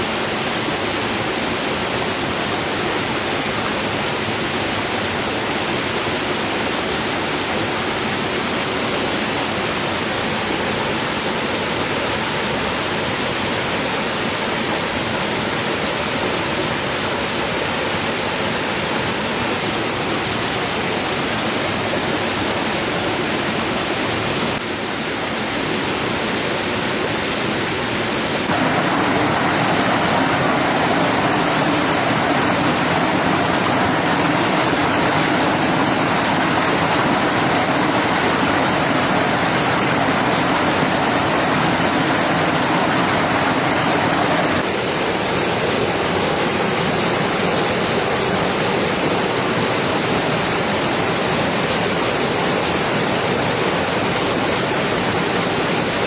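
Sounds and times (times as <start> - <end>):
heavy rain pouring: 28.4 - 56.0.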